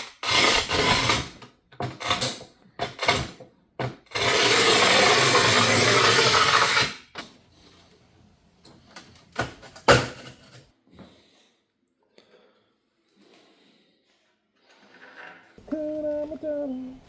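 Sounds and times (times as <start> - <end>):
power tool running: 4.1 - 7.0.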